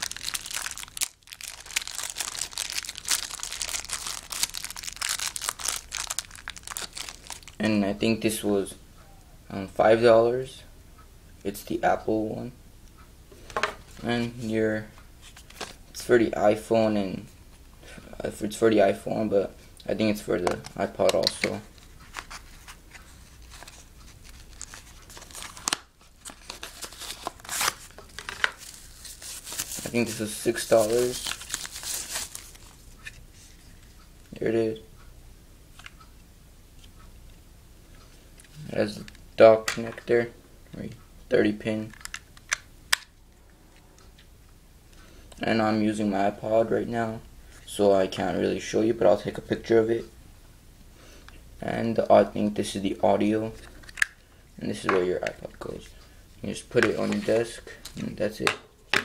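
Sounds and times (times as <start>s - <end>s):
plastic packaging crinkling: 0.0s - 7.6s, 20.8s - 33.6s.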